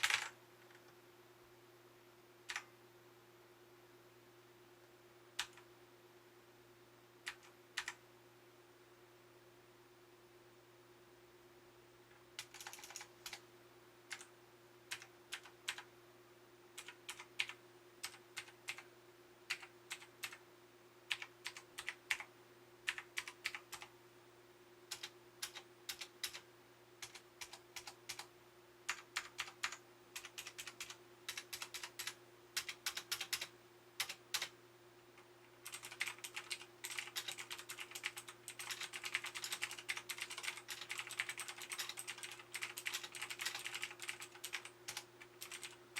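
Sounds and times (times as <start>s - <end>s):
mechanical keyboard typing: 0.0s - 0.4s, 5.4s - 5.6s, 7.3s - 8.0s, 12.4s - 13.4s, 14.9s - 15.9s, 16.8s - 18.8s, 19.5s - 20.4s, 21.1s - 22.3s, 22.9s - 23.9s, 24.9s - 26.4s, 27.0s - 28.3s, 28.9s - 34.5s, 35.6s - 45.8s
faint steady hum: 0.0s - 45.9s.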